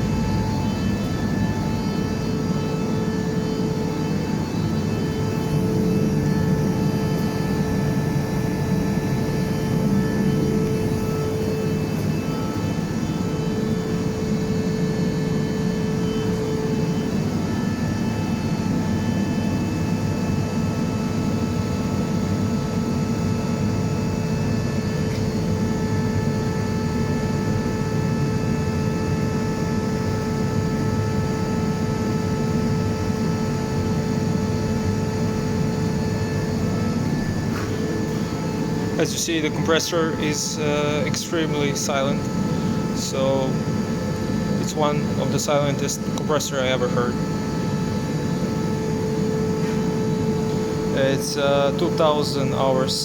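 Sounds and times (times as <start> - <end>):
air compressor humming: 0.0 - 19.8, 30.4 - 53.0.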